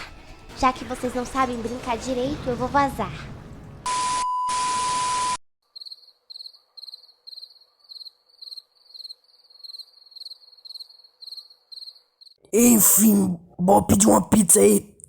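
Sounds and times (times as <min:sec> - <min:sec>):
loud steady beep: 0:03.9 - 0:05.4
crickets chirping: 0:05.8 - 0:12.4.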